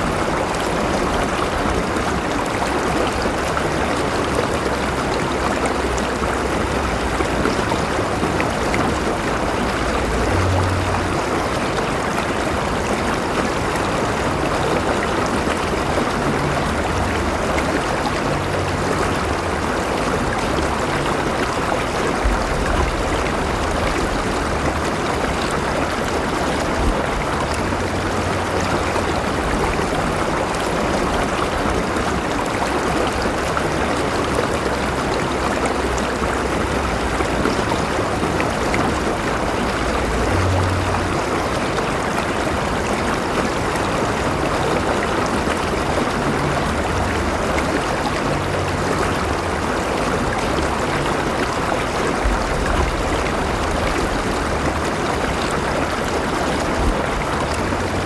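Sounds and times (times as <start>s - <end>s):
river rushing over rocks: 0.0s - 58.0s
low rumble: 4.7s - 13.2s, 15.6s - 32.2s, 34.6s - 43.2s, 45.6s - 58.0s.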